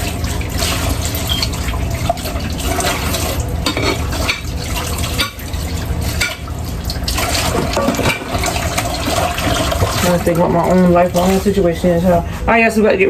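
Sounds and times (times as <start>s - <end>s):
tap running into sink: 0.0s - 11.5s
dishes and utensils clinking: 2.7s - 5.5s, 6.1s - 6.5s, 7.4s - 8.5s.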